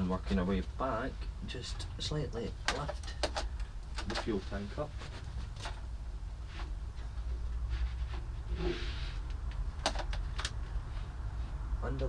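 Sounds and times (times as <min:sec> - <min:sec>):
steady low hum: 0:00.0 - 0:12.0
sharp clicks and knocks: 0:02.6 - 0:04.4, 0:09.2 - 0:10.6.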